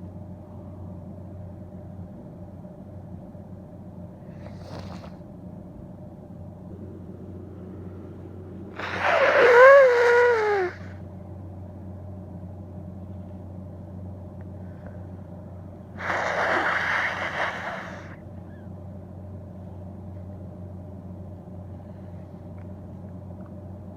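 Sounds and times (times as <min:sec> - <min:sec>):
woman sneezing: 0:08.8 - 0:10.9.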